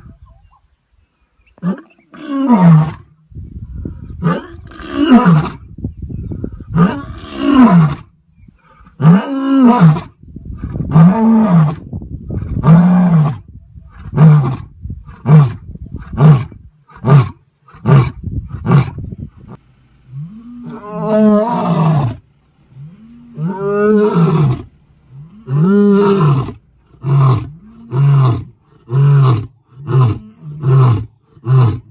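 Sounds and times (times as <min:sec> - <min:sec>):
lion roaring: 0:20.1 - 0:31.9.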